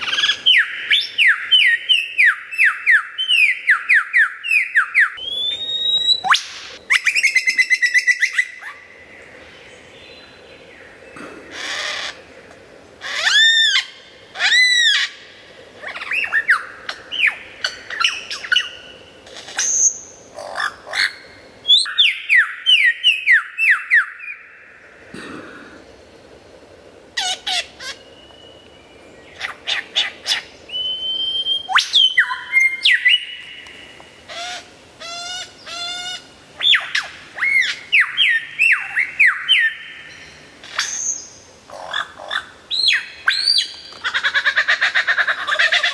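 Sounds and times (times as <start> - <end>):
lyrebird singing: 0.0 - 25.3, 27.2 - 45.9.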